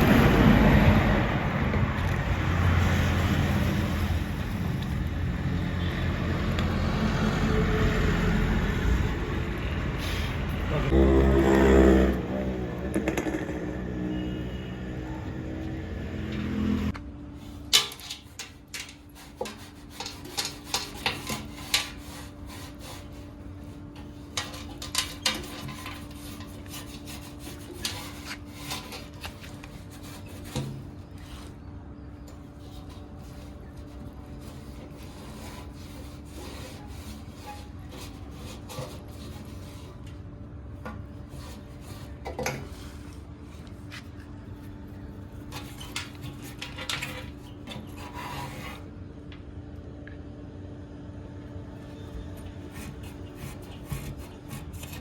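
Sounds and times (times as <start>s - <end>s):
hand tool scraping and tapping metal: 17.7s - 23.1s, 24.0s - 31.5s, 45.4s - 48.8s, 52.4s - 55.0s.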